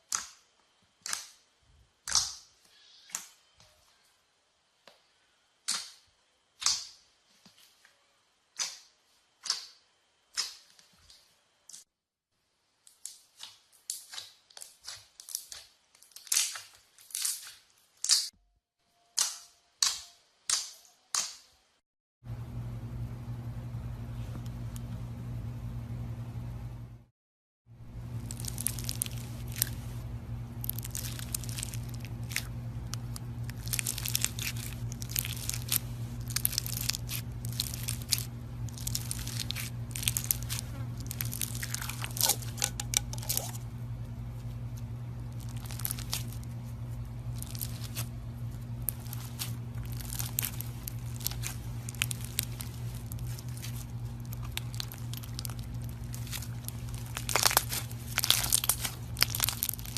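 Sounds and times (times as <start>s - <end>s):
slime crackling and popping: 12.9s - 18.3s, 28.0s - 30.0s, 30.6s - 43.6s, 45.3s - 59.9s.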